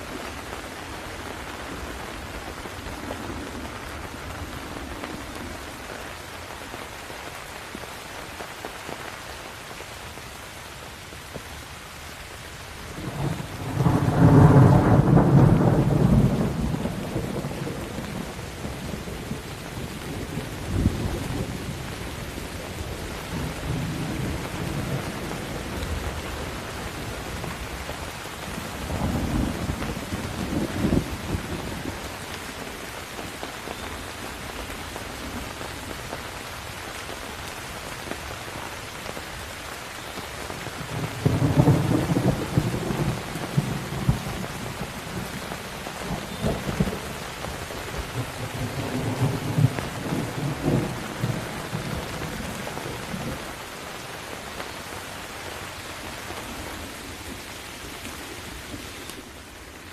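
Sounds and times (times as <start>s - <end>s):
heavy rain: 0.0s - 59.9s
rolling thunder: 13.0s - 22.2s.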